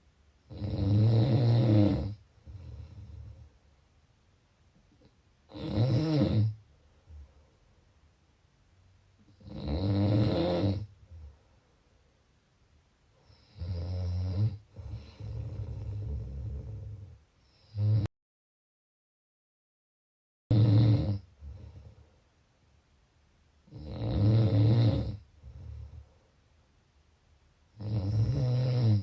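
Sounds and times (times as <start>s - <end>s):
person snoring: 0.5s - 3.5s, 5.5s - 6.6s, 9.4s - 11.2s, 13.2s - 18.1s, 20.5s - 22.0s, 23.7s - 26.0s, 27.8s - 29.0s.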